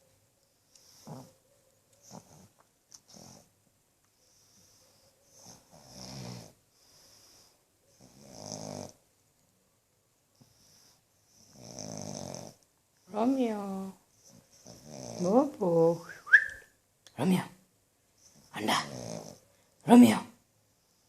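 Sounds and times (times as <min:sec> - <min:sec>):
dog snoring: 0:00.8 - 0:01.4, 0:02.0 - 0:02.5, 0:03.1 - 0:03.5, 0:05.3 - 0:09.0, 0:10.5 - 0:12.6, 0:14.2 - 0:15.5, 0:18.6 - 0:19.5.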